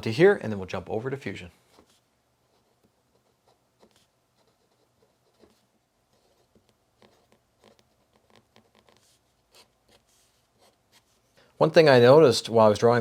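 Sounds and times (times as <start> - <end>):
pencil scratching on paper: 1.7 - 11.4.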